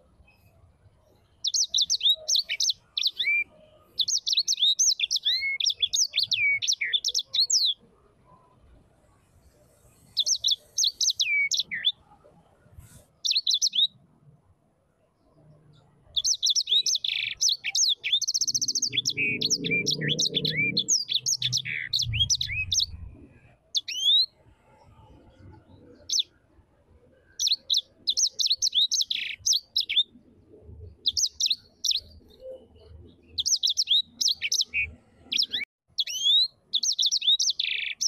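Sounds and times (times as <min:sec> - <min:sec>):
bird chirping and trilling: 0:01.3 - 0:07.9, 0:10.0 - 0:12.1, 0:13.2 - 0:14.0, 0:16.1 - 0:26.4, 0:27.2 - 0:38.0.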